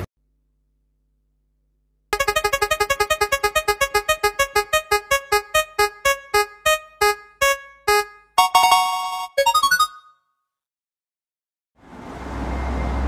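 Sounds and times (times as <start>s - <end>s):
electric piano jingle: 2.2s - 10.1s.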